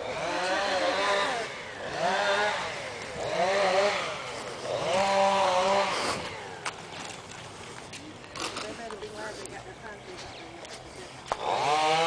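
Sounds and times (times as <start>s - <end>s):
chainsaw revving: 0.0s - 7.5s, 8.2s - 9.0s, 11.2s - 12.0s.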